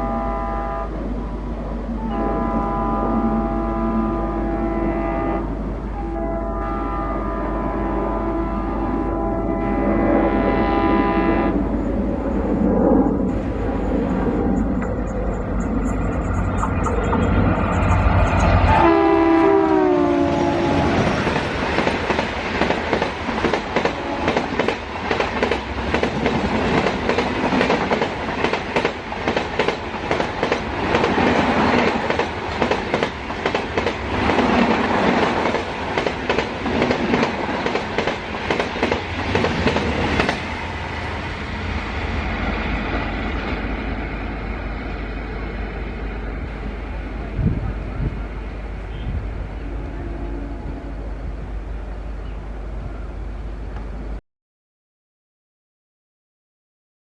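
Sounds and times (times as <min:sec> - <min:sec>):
locomotive horn: 0:00.0 - 0:01.0, 0:02.0 - 0:11.7, 0:18.6 - 0:21.3, 0:23.9 - 0:24.4, 0:48.8 - 0:51.3
train wheels clattering over rail joints: 0:21.2 - 0:40.5.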